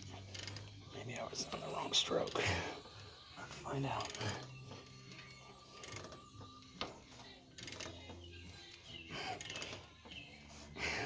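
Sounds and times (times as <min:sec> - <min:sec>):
metallic wrench clicks and knocks: 0:00.2 - 0:00.7, 0:05.2 - 0:06.2, 0:07.6 - 0:08.0.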